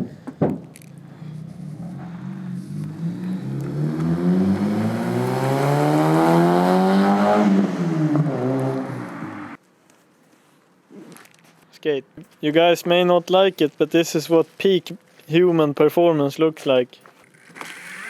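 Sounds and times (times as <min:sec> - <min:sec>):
car engine accelerating: 0:01.0 - 0:09.6.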